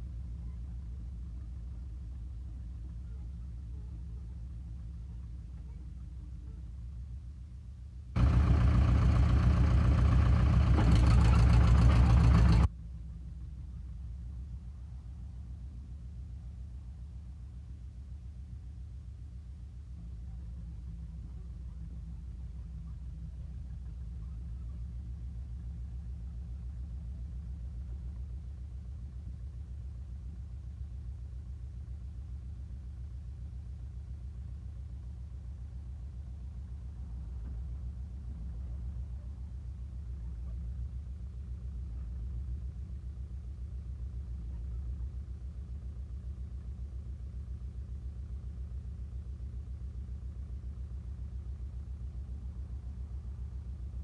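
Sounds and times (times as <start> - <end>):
crawler diesel engine rumbling: 0.0 - 54.0.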